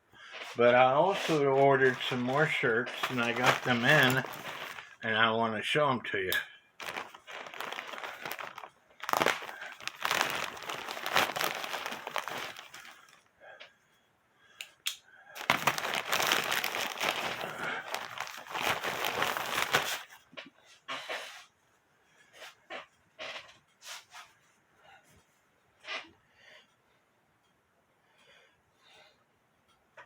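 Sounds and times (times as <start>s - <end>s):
packaging crinkling and rustling: 0.2s - 5.0s, 6.8s - 13.3s, 15.4s - 20.2s.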